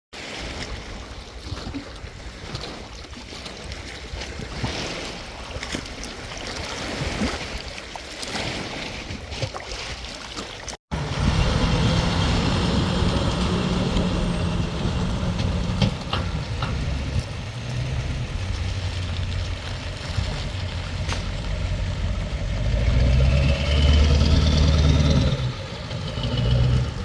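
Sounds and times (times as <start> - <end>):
splashing water: 0.2 - 27.0
engine hum: 10.9 - 27.0
low rumble: 10.9 - 27.0
wind buffeting microphone: 11.0 - 27.0.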